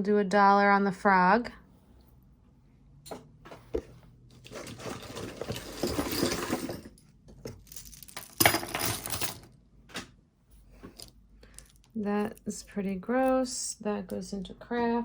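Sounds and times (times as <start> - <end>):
jewelry chains clinking: 4.5 - 9.5.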